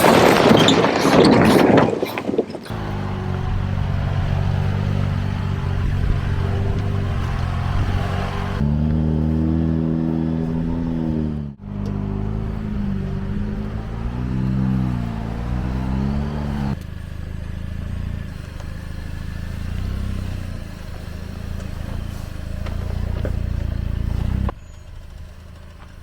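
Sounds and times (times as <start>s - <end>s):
tyre rumble: 0.0s - 16.8s
off-road vehicle engine revving: 2.7s - 26.0s.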